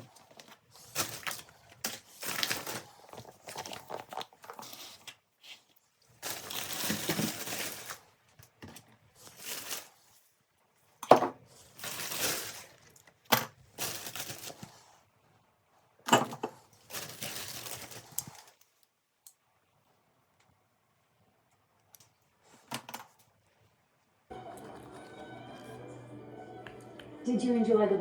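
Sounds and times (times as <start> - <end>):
rustling crinkling handling: 0.0 - 10.3, 11.4 - 15.0, 16.4 - 18.9.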